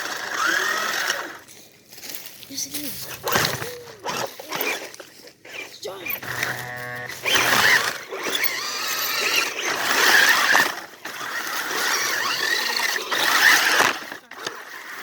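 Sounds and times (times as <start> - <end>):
small electric motors whining: 0.0 - 1.5, 3.0 - 15.0
short buzzy tone: 6.2 - 7.8.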